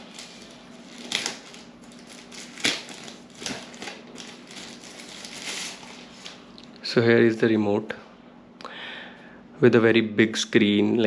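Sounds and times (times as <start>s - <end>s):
packaging rustling and clicking: 0.0s - 6.7s
faint steady hum: 0.0s - 11.0s.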